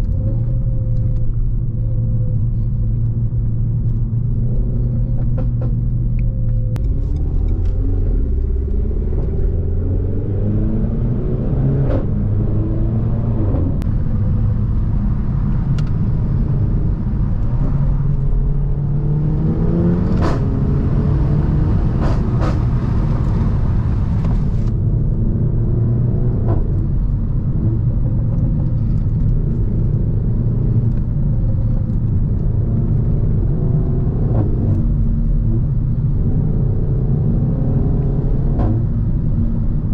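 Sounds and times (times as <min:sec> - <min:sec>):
car engine revving through gears: 0:04.4 - 0:39.9.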